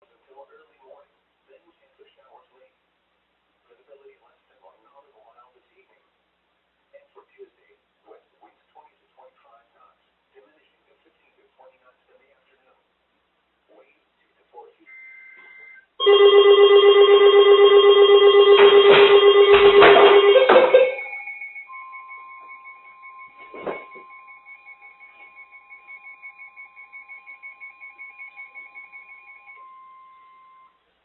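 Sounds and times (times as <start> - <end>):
pulsing multi-tone alarm: 14.9 - 30.8
warbling data tones: 18.2 - 30.5.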